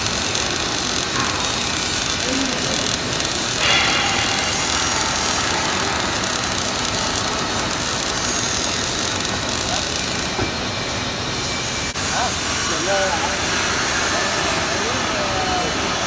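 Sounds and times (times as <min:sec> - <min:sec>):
welding arc crackling hiss: 0:00.0 - 0:10.4.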